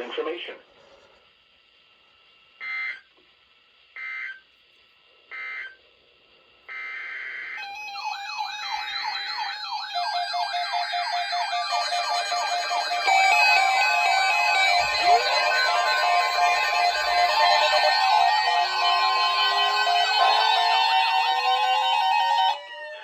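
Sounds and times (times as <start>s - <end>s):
data tone bursts: 6.7s - 22.5s
layered electronic tones: 6.7s - 22.7s
siren-like wail: 6.7s - 23.0s
steady high tone: 6.7s - 23.0s.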